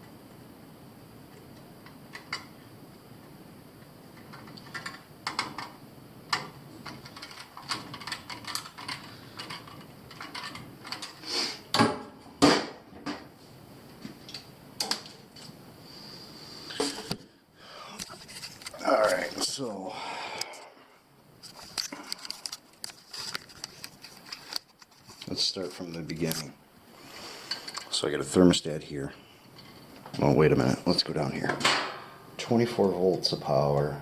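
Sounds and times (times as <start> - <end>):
hand tools clicking and tapping: 6.3 - 11.8.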